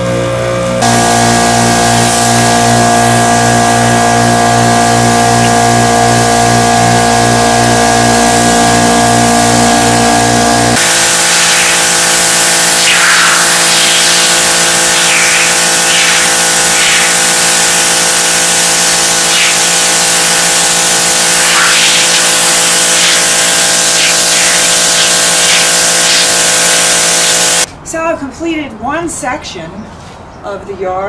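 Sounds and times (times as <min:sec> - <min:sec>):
pressure washer motor whine: 0:00.0 - 0:27.7
water jet hissing on paving: 0:10.7 - 0:27.7.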